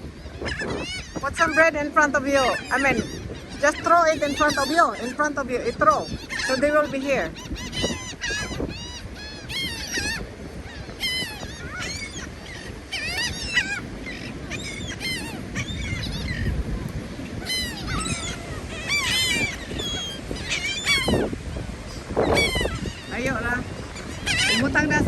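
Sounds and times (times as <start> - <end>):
seagulls squawking: 0.0 - 25.0.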